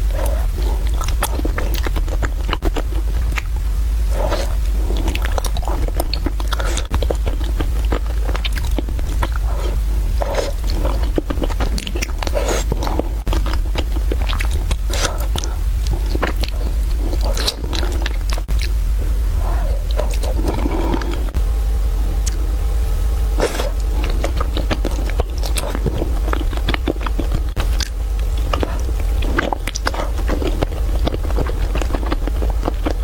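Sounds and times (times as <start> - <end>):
chewing noodles: 0.0 - 18.8, 19.5 - 21.4, 23.4 - 33.0
steady low hum: 0.0 - 33.0.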